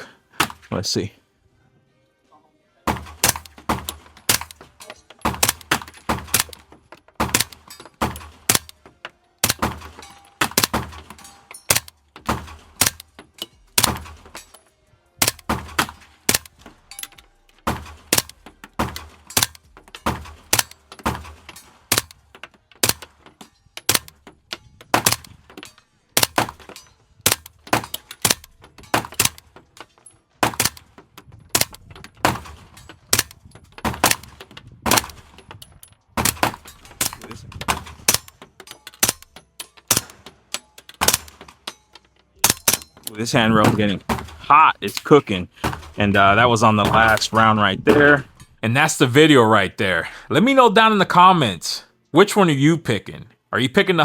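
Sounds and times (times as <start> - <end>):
suppressed gunshots: 2.9 - 8.8, 9.4 - 14.5, 15.2 - 23.3, 23.9 - 29.6, 30.4 - 35.4, 36.2 - 41.6, 45.6 - 46.2, 46.8 - 48.4.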